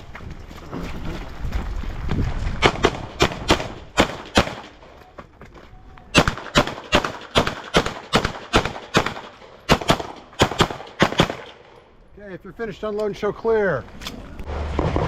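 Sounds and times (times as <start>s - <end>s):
pistol shots: 2.6s - 4.8s, 6.1s - 11.7s.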